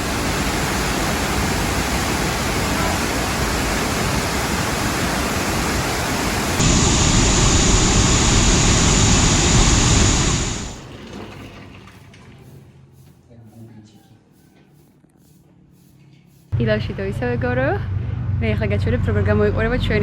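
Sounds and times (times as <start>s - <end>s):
waterfall rushing: 0.0s - 10.8s.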